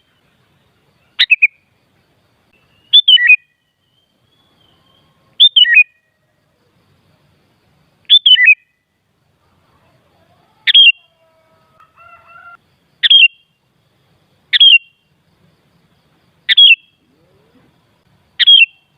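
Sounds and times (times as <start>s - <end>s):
bird chirping: 0.0s - 9.0s, 10.6s - 13.7s, 14.3s - 15.2s, 16.4s - 18.9s
faint steady tone: 0.0s - 18.9s.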